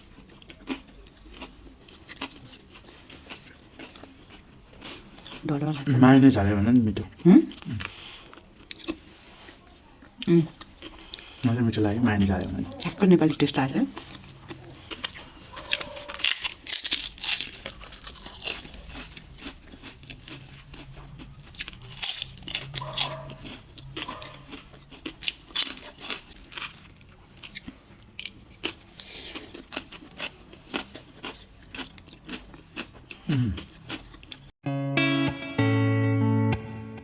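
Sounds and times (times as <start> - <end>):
crunching toasted bread: 0.0 - 5.5, 12.8 - 34.5.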